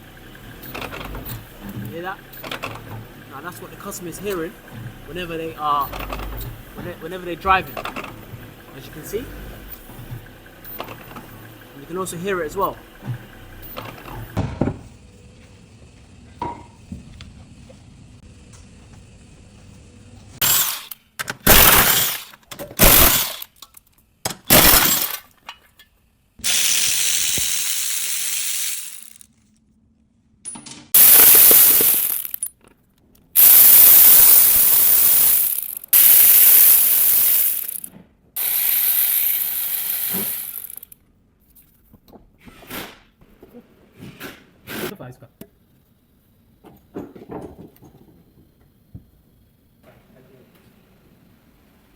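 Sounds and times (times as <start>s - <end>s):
power tools running in bursts: 20.4s - 23.4s, 26.4s - 29.2s, 31.0s - 32.4s, 33.4s - 41.0s.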